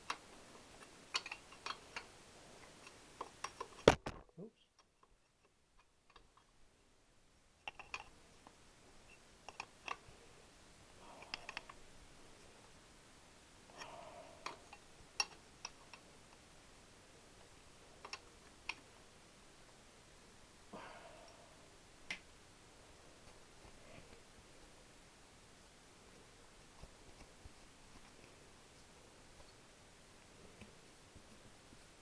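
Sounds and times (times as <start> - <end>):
hand tools clicking and tapping: 1.1 - 2.1.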